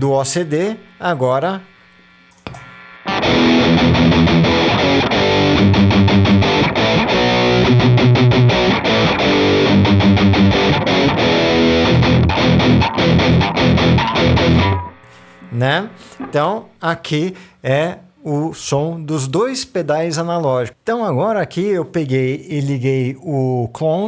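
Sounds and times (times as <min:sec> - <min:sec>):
distorted electric guitar riff: 0:00.0 - 0:17.5.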